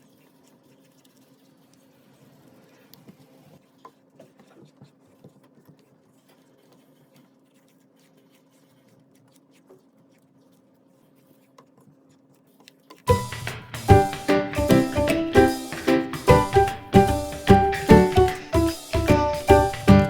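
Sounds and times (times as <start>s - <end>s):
background music with a beat: 13.1s - 20.0s.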